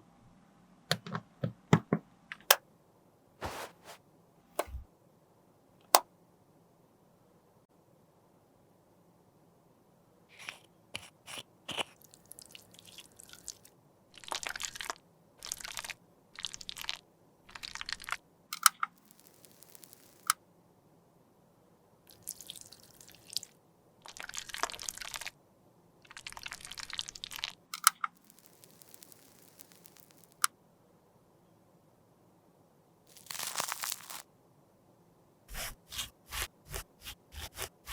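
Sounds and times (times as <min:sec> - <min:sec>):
crunchy scraping of makeup: 0:03.4 - 0:04.0, 0:10.3 - 0:12.0, 0:28.1 - 0:30.5, 0:33.1 - 0:34.2
sharp clicks: 0:27.8 - 0:30.5.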